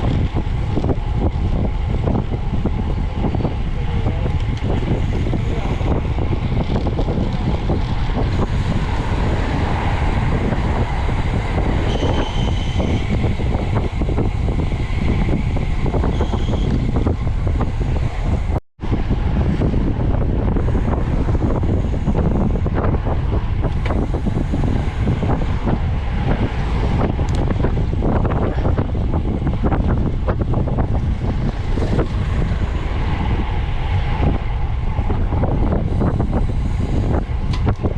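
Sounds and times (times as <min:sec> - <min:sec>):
wind buffeting microphone: 0:00.0 - 0:37.9
faint high whistle: 0:11.9 - 0:13.1, 0:16.1 - 0:16.7.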